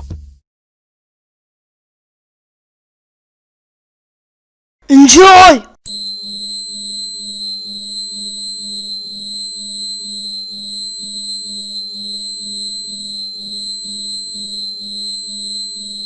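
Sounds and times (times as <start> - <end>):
high-pitched electronic tone: 5.9 - 16.0.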